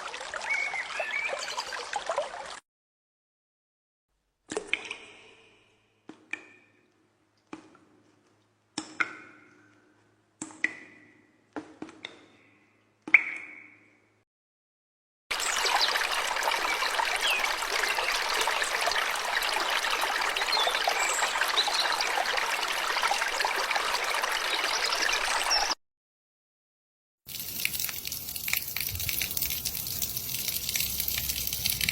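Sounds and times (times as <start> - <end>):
running water stream: 0.0 - 2.6, 15.3 - 25.8, 27.3 - 31.9
water drops plinking: 27.3 - 31.9.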